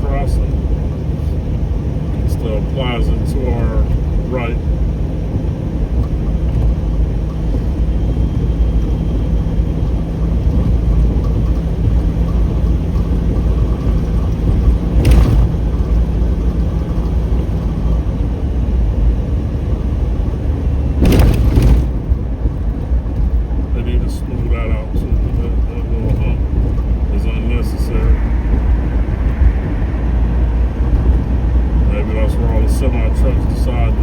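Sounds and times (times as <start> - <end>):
car cabin road and engine rumble: 0.0 - 34.0
short knock: 15.0 - 15.8, 21.0 - 22.2.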